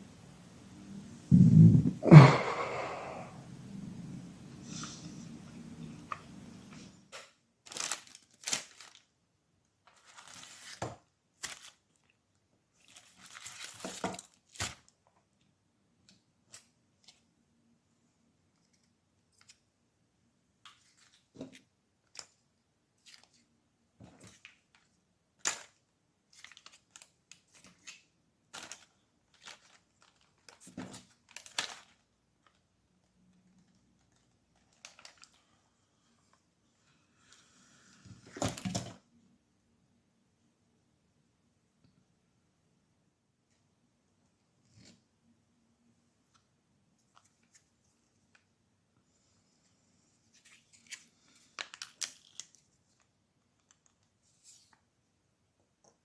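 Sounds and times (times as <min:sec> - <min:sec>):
paper packaging crinkling: 0:07.6 - 0:09.2, 0:09.9 - 0:10.8, 0:11.4 - 0:14.9, 0:24.2 - 0:32.6, 0:33.5 - 0:35.5, 0:50.4 - 0:54.6.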